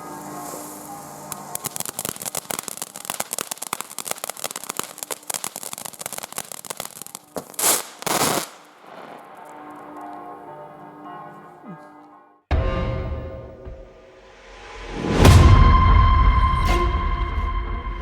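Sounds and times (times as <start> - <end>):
background music: 0.0 - 3.2, 7.0 - 18.0
firework fountain crackling: 0.0 - 10.2.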